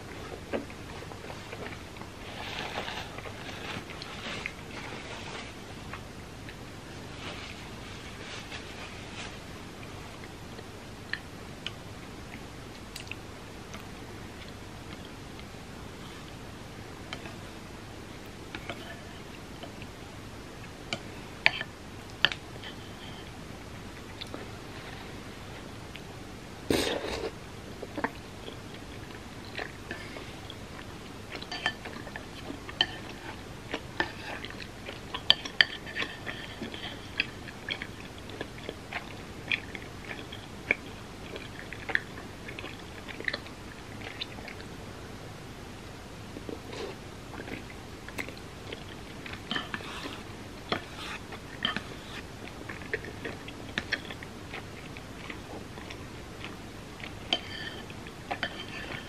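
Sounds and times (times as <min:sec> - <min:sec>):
person chewing food: 0:26.7 - 0:44.8, 0:46.4 - 0:59.0.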